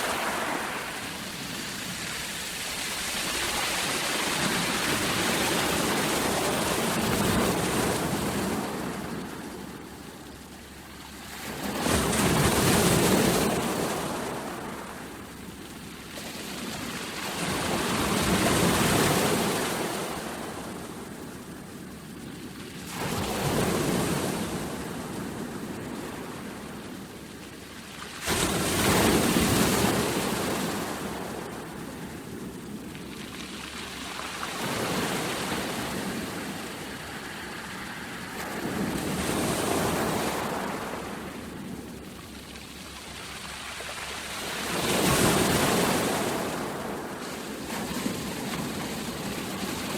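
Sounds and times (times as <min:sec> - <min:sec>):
ocean waves breaking on shore: 0:00.0 - 0:10.5, 0:22.8 - 0:49.9.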